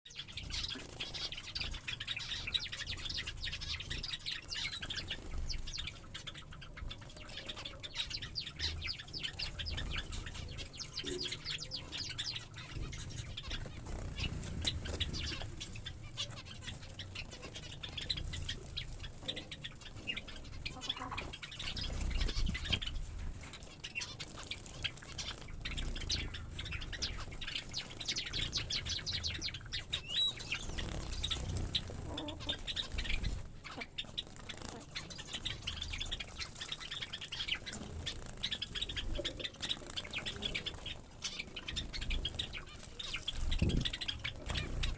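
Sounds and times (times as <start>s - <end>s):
small birds chirping: 0.1s - 44.9s
wings fluttering: 12.1s - 44.9s.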